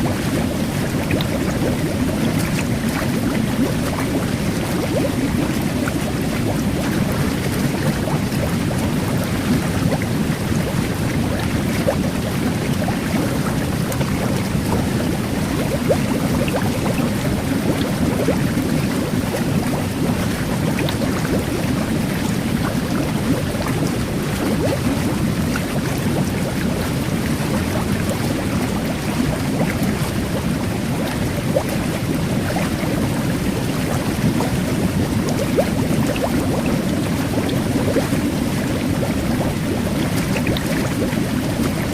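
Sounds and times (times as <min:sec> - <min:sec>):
fizzing bubbles popping: 0:00.0 - 0:41.9
jet bath churning water: 0:00.0 - 0:41.9.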